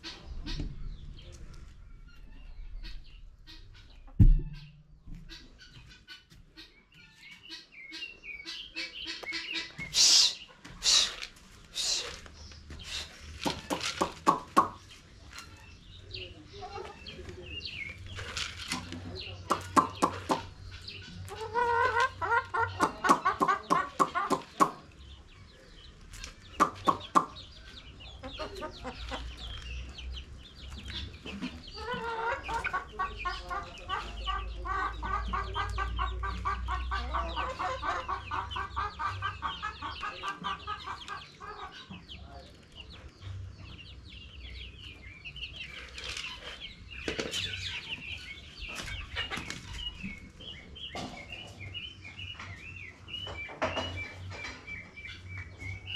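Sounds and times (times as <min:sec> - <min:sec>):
chickens clucking: 0:00.0 - 0:55.9.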